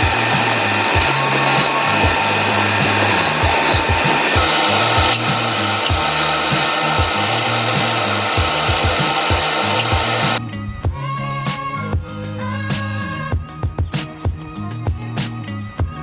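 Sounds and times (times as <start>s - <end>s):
power tool cutting wood: 0.0s - 10.4s
background music with steady beat: 0.0s - 16.0s.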